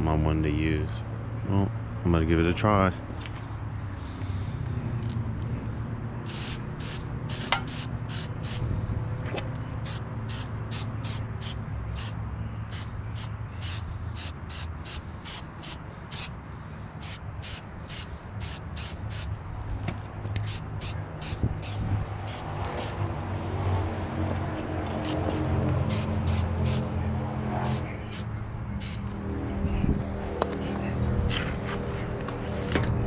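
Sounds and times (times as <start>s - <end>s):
spray paint can hissing bursts: 6.3s - 8.6s, 9.8s - 16.3s, 17.0s - 19.3s, 20.4s - 23.0s, 25.8s - 26.9s, 27.6s - 29.0s
steady low hum: 25.4s - 33.0s.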